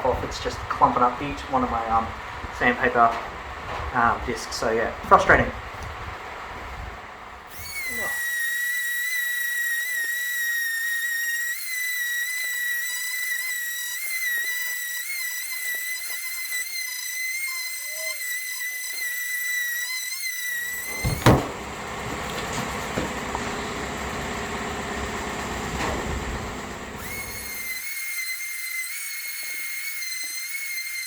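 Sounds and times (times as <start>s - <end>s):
orbital sander whining: 7.5s - 31.0s.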